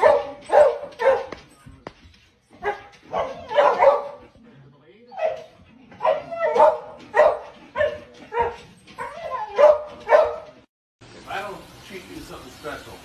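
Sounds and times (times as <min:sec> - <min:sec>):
dog barking: 0:00.0 - 0:01.4, 0:02.6 - 0:04.4, 0:05.2 - 0:10.6.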